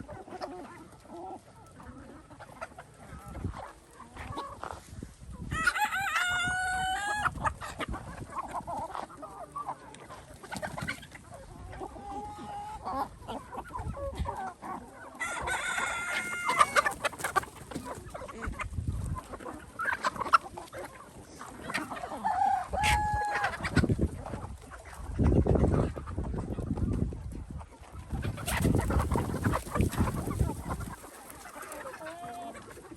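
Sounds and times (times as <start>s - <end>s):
chickens clucking: 0.0s - 32.9s
rooster crowing: 5.5s - 7.3s, 15.2s - 16.8s.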